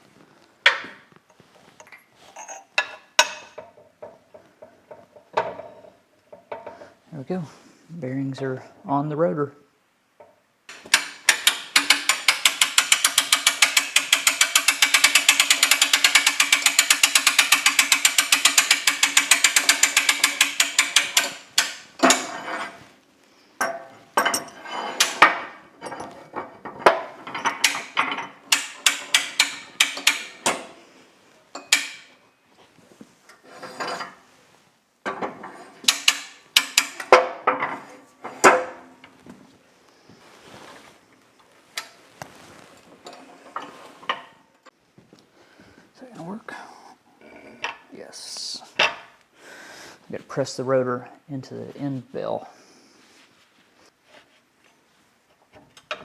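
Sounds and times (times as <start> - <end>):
ratchet clicking: 10.9 - 21.8.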